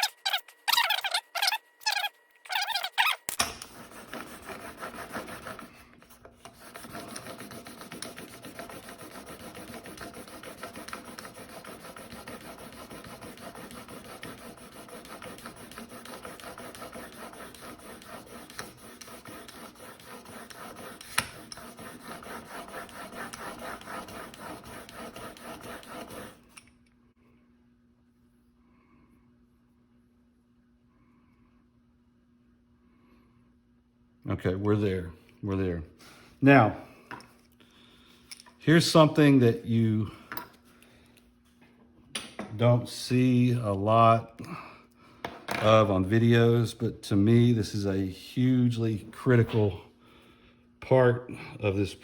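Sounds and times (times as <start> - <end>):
loud squeaks: 0.0 - 3.3
blade scraping on sandpaper: 0.0 - 5.8, 6.4 - 26.6.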